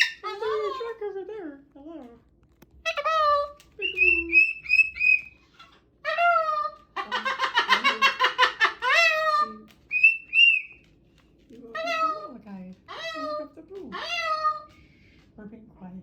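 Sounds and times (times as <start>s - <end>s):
cockatoo whistling and calling: 0.0s - 0.8s, 3.8s - 10.9s
cockatoo fast chattering: 0.0s - 1.0s, 3.9s - 10.6s.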